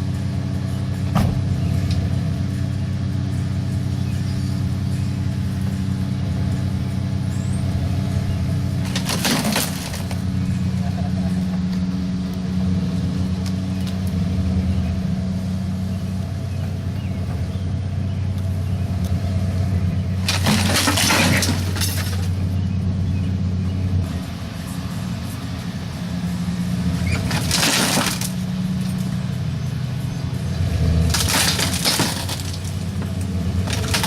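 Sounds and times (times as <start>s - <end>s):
loud crunching crashes: 8.8s - 10.3s, 20.2s - 22.4s, 27.0s - 28.5s, 30.6s - 34.0s.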